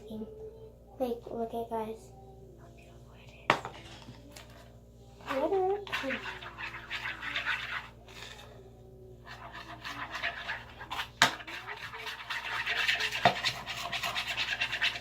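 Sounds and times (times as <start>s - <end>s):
wooden stick scraping a bowl: 5.2s - 8.6s, 9.2s - 15.0s.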